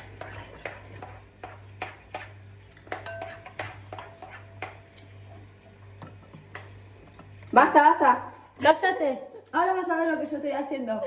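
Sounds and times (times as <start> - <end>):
spoons and dishes clinking: 2.2 - 5.1.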